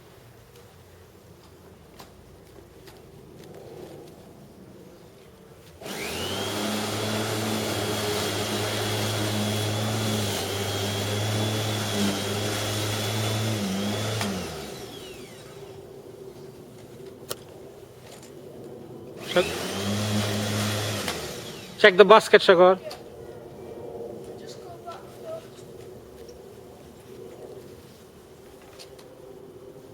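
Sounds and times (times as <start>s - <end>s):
electric lawnmower motor whining: 5.8s - 15.8s, 19.2s - 22.4s.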